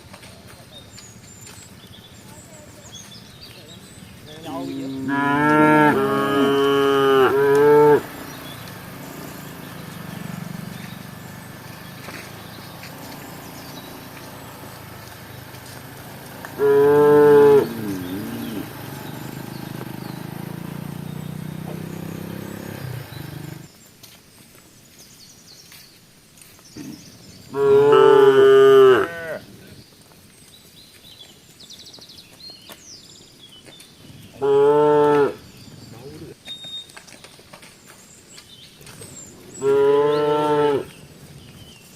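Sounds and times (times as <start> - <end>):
cow mooing: 4.6 - 8.3, 16.4 - 19.4, 27.5 - 29.4, 34.4 - 35.4, 39.5 - 40.9.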